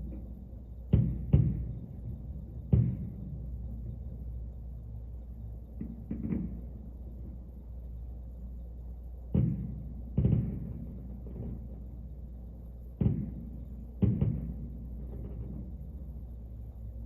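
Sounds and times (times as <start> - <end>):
fireworks bursting with deep booms: 0.0 - 4.0, 5.7 - 7.4, 9.2 - 16.5.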